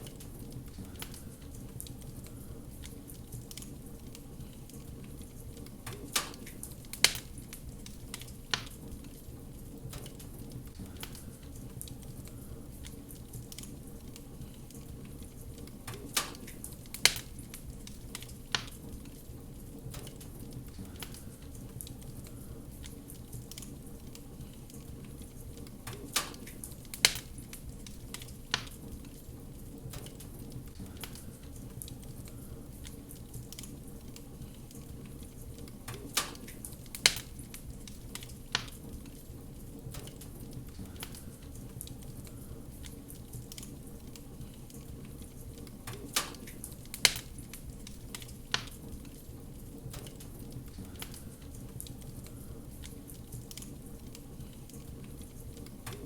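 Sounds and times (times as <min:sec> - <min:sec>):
fire crackles and sharp pops: 0:00.0 - 0:56.0
wood fire burning: 0:00.0 - 0:56.0.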